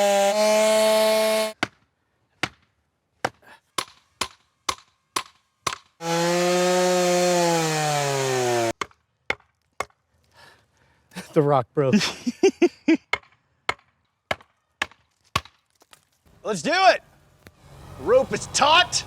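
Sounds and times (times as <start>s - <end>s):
chainsaw running: 0.0s - 1.6s, 6.0s - 8.8s
wedges being hammered: 3.2s - 6.2s.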